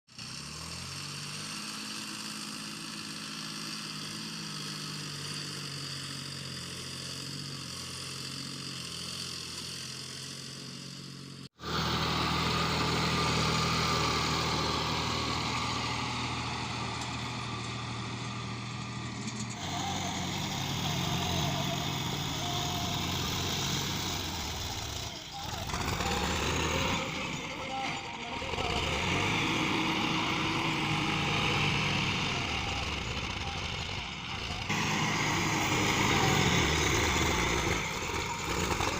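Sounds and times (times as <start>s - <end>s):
tractor diesel engine running: 0.1s - 38.9s.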